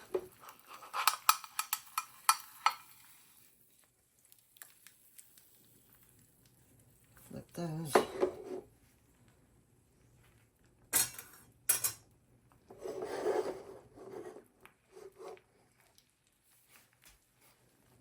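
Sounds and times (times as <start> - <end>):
metal cookware clinking: 0.7 - 3.0, 11.0 - 12.0.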